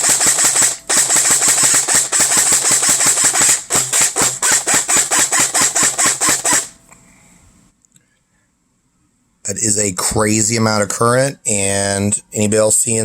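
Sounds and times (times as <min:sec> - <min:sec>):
airsoft gun firing rapidly: 0:00.0 - 0:06.8.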